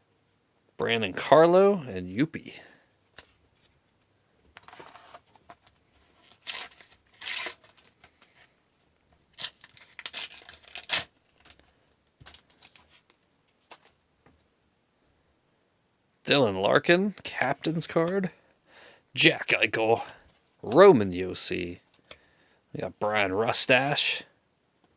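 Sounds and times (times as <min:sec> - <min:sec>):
paper tearing and rustling: 0:04.7 - 0:08.4, 0:09.3 - 0:11.6.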